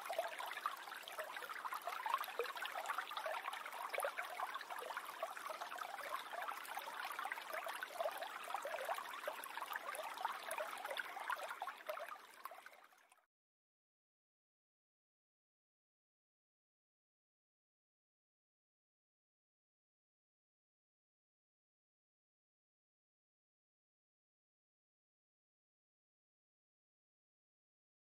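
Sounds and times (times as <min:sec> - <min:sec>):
stream trickling: 0:00.0 - 0:13.3.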